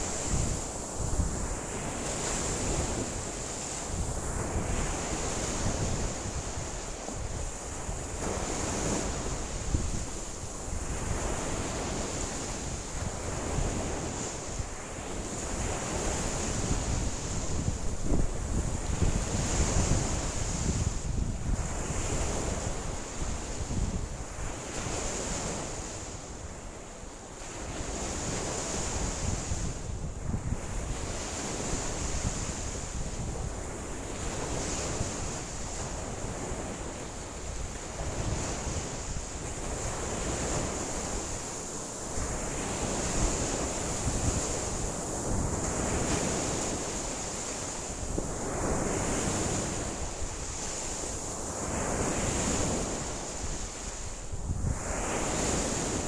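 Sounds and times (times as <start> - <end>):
waves breaking on shore: 0.0 - 56.0
wind buffeting microphone: 15.3 - 25.6, 42.1 - 56.0.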